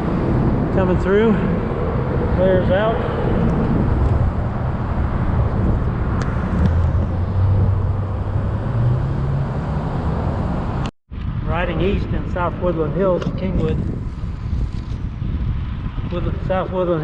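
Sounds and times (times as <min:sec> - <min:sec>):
road traffic noise: 0:00.0 - 0:17.0
vehicle engine hum: 0:00.0 - 0:17.0
wind on microphone: 0:00.0 - 0:17.0.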